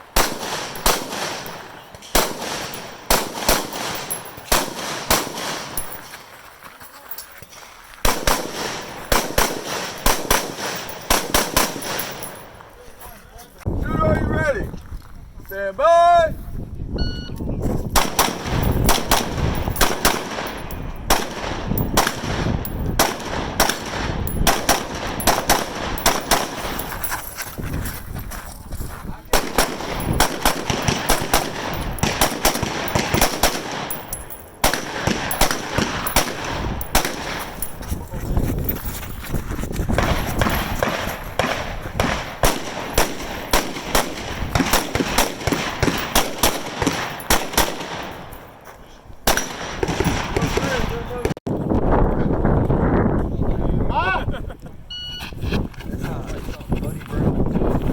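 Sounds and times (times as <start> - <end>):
rifle shots: 0.0 - 6.2, 8.0 - 12.6, 18.0 - 27.0, 29.3 - 37.8, 40.0 - 48.4, 49.2 - 51.3.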